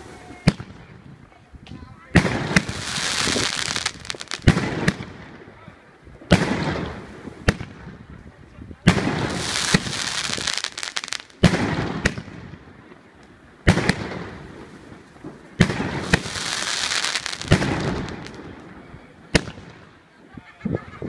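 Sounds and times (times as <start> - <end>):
firework bangs: 2.1 - 5.6, 6.2 - 8.1, 8.8 - 13.0, 13.6 - 20.0
firework crackling hiss: 2.2 - 5.0, 8.9 - 12.4, 13.6 - 18.6.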